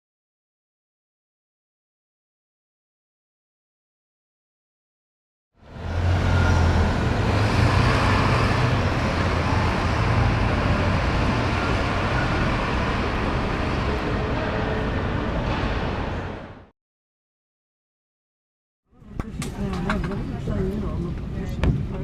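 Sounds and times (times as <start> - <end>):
traffic noise with low hum: 5.6 - 16.7, 18.9 - 22.0.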